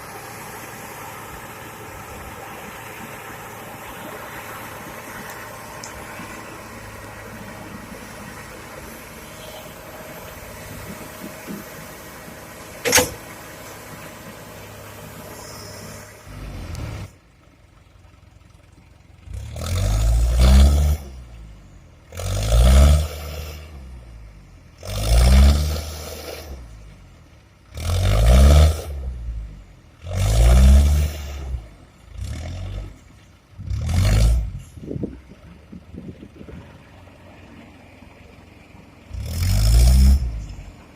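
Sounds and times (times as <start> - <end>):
excavator diesel engine: 0.0 - 40.9
sharp click: 12.8 - 13.2.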